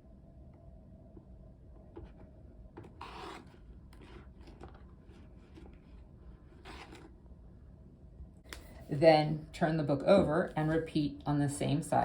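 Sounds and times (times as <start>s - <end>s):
rod rubbing inside book spine: 2.8s - 7.1s.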